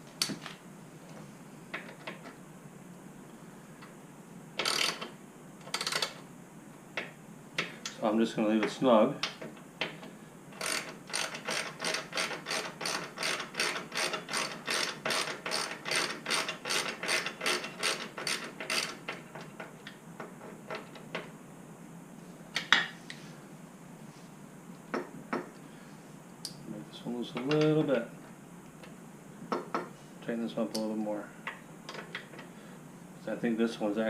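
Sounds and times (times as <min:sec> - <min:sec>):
ratchet wrench clicking: 0:10.6 - 0:19.0.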